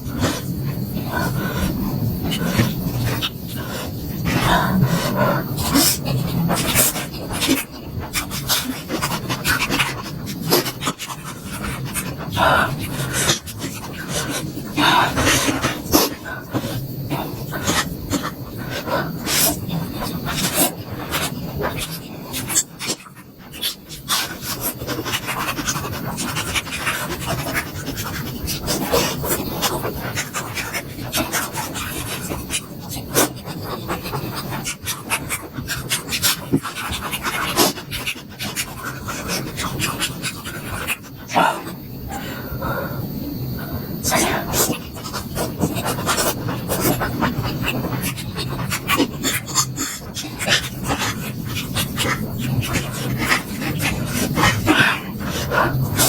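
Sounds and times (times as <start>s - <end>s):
breathing: 41.4s - 44.6s.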